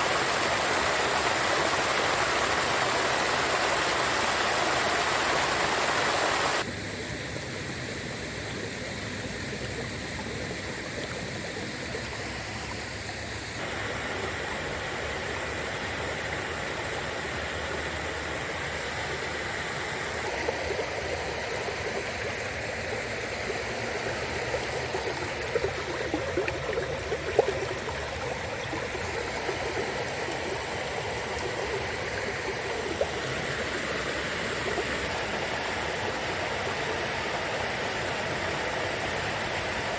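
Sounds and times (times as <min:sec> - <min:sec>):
louder rush of water: 0:00.0 - 0:08.4, 0:10.7 - 0:39.9
river babbling and gurgling: 0:00.0 - 0:39.9
small sharp water splashes: 0:20.2 - 0:35.6.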